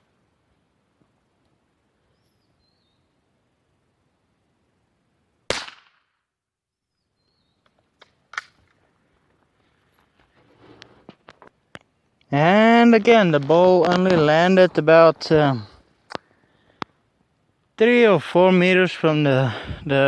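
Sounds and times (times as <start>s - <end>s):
faint bird chirps: 2.0s - 3.3s, 6.7s - 7.8s
gunshot: 5.5s - 6.1s.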